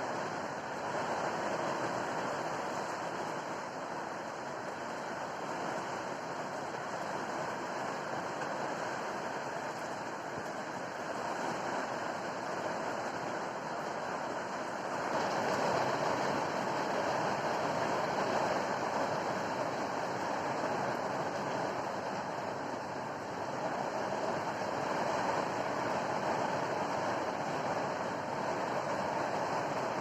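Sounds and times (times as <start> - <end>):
heavy rain with strong wind: 0.0 - 30.0.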